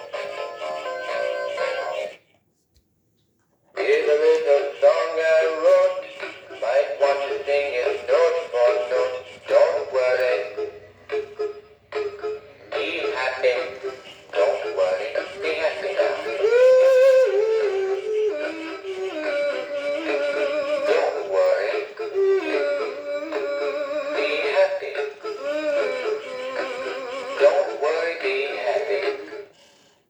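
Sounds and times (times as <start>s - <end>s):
toy speaker playing song: 0.0s - 2.2s, 3.8s - 29.7s.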